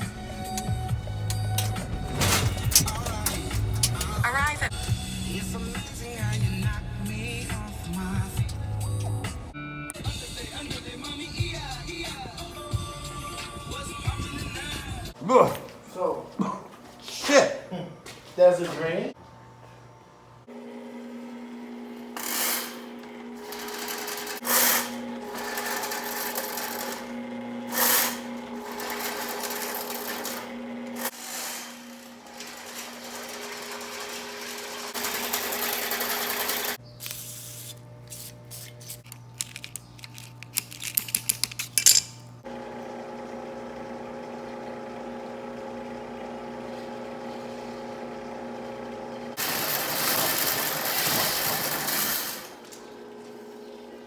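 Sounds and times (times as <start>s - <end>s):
drain-cleaning machine motor: 0.0s - 9.5s, 20.4s - 40.5s, 42.4s - 54.0s
fast rattle of clicks: 1.3s - 5.2s.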